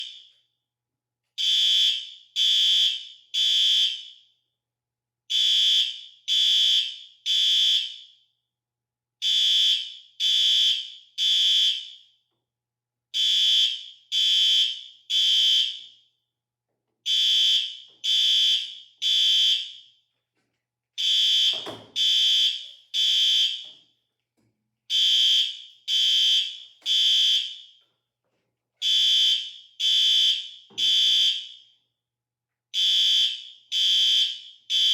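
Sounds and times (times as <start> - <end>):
fire alarm beeps: 1.4 - 4.4, 5.3 - 8.4, 9.2 - 12.3, 13.2 - 16.2, 17.1 - 20.1, 21.0 - 23.8, 24.9 - 27.9, 28.8 - 31.9, 32.8 - 34.9.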